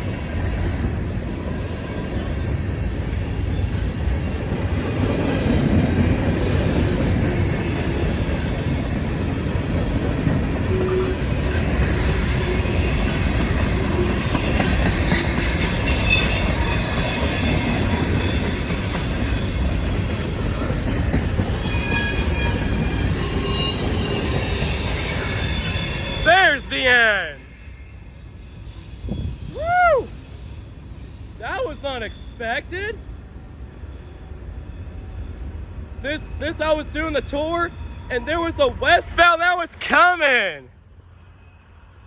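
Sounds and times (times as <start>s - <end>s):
high-pitched wheel squeal: 0.0s - 5.0s, 7.3s - 9.5s, 10.7s - 20.8s, 21.5s - 35.3s
rumble of train wheels on rail: 0.0s - 26.7s, 27.4s - 42.0s.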